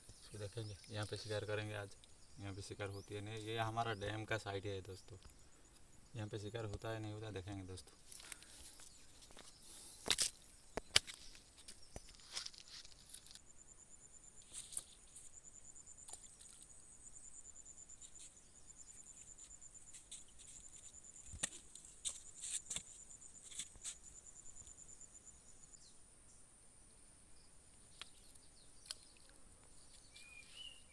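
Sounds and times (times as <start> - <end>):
insects trilling: 0.0 - 30.9.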